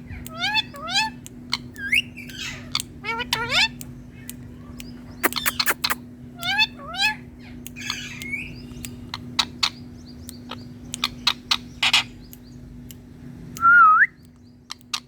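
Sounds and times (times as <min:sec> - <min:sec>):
steady low hum: 0:00.0 - 0:15.0
sharp clicks: 0:00.2 - 0:06.6, 0:12.3 - 0:15.0
parakeet squawks and whistles: 0:05.2 - 0:07.2.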